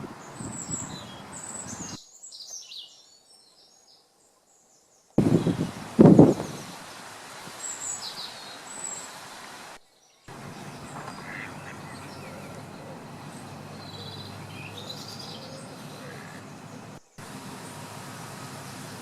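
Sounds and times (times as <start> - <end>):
low background noise: 0.0 - 19.0
small birds chirping: 0.0 - 19.0
ducks quacking: 10.3 - 16.8.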